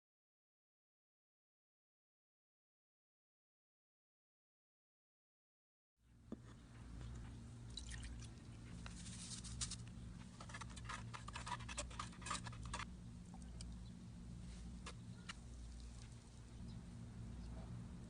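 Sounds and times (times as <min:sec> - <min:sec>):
low steady hum: 0:06.1 - 0:18.0.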